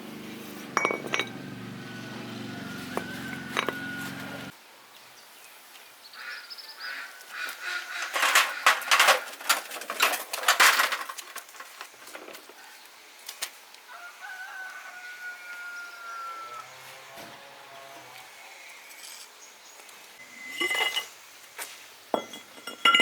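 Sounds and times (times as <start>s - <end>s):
birds calling: 0.3s - 4.5s.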